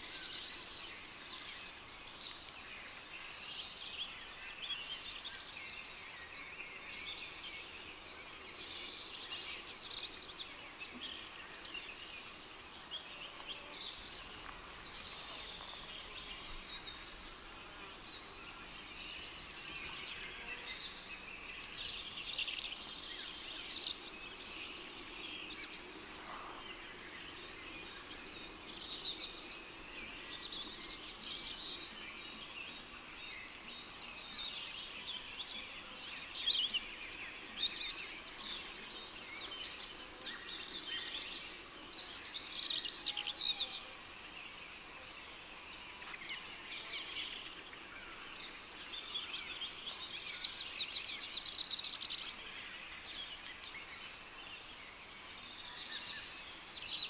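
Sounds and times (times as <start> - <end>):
cricket chirping: 11.3 - 35.8, 36.6 - 57.0.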